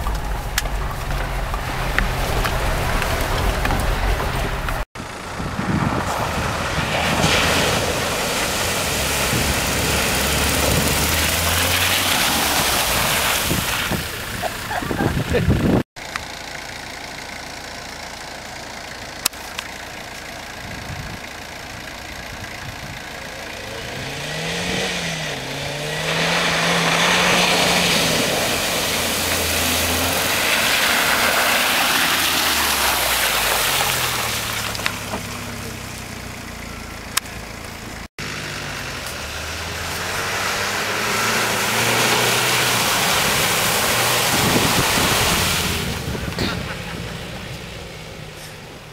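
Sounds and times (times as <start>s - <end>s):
loud rushing noise: 0.0s - 14.1s
engine revving: 0.0s - 15.9s, 22.6s - 48.9s.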